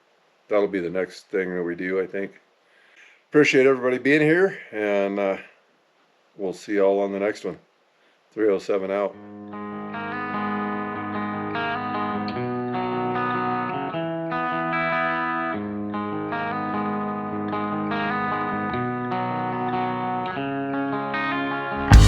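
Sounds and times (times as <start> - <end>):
guitar playing effects-processed chords: 9.2 - 22.0.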